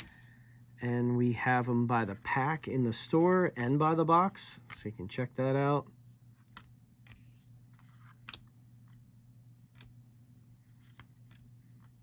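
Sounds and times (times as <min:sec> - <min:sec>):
low steady hum: 0:00.0 - 0:12.0
cards swishing and clicking: 0:10.7 - 0:12.0.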